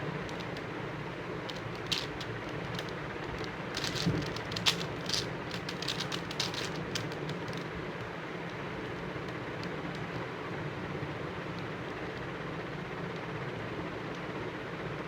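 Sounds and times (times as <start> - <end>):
background hum: 0.0 - 15.0
puzzle cube clicking: 1.5 - 7.7.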